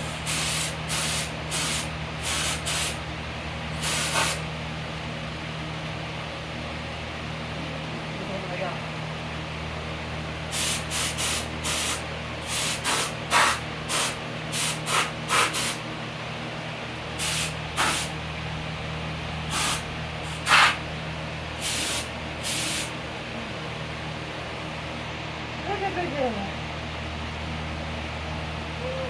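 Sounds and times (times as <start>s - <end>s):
spray paint hissing: 0.0s - 3.0s, 3.8s - 4.4s, 10.5s - 15.8s, 17.2s - 18.1s, 19.5s - 20.8s, 21.6s - 22.9s.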